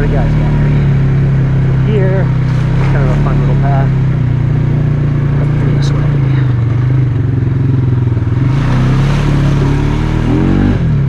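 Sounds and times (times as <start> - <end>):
atv engine running: 0.0 - 11.0.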